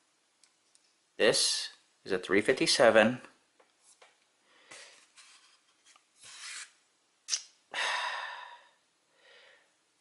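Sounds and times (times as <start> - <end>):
rubbing and scraping: 4.9 - 6.8.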